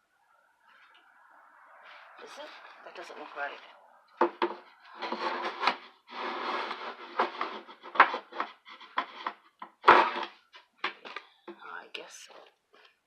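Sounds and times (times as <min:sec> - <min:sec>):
short wooden knocks: 0:04.2 - 0:05.9
wooden boards scraping and sliding: 0:04.2 - 0:11.2.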